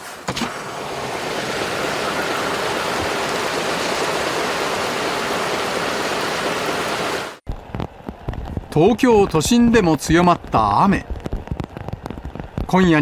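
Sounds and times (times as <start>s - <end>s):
floodwater rushing: 0.0s - 7.4s.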